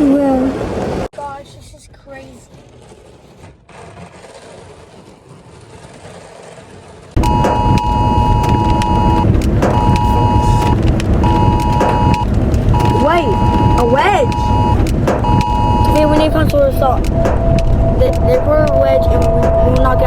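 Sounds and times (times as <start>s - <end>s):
phone alert two-tone blasts: 7.2s - 16.4s
loud noise: 7.2s - 20.0s.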